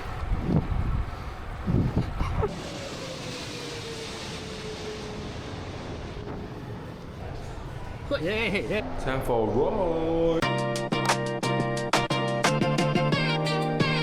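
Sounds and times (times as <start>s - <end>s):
wind buffeting microphone: 0.0s - 8.9s
steady rushing noise: 0.0s - 12.6s.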